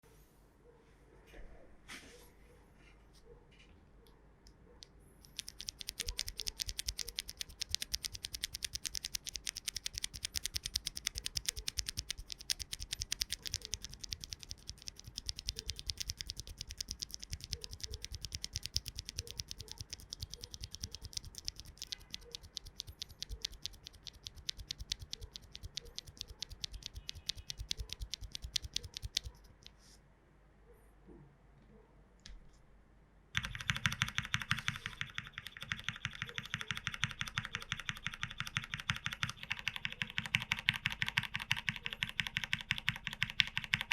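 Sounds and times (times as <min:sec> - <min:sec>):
mechanical keyboard typing: 0:05.2 - 0:29.7, 0:33.4 - 0:43.9.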